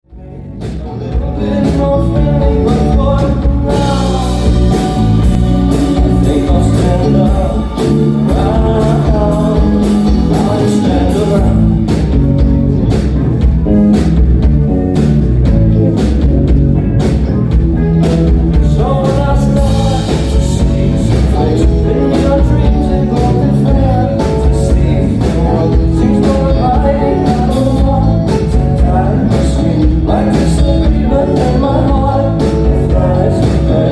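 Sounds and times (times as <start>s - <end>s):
person singing: 0.1s - 12.9s, 18.0s - 33.9s
live rock band playing: 0.1s - 33.9s
steady drum beat: 0.1s - 33.9s.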